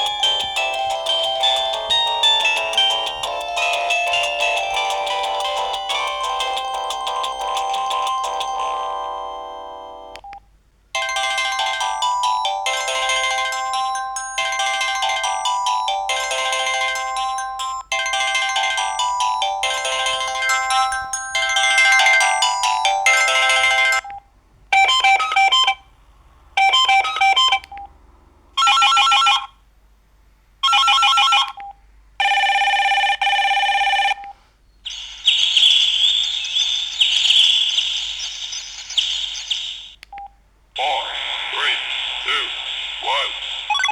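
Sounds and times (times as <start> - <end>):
polyphonic ringtone melody: 0.0 - 10.2, 11.0 - 24.1.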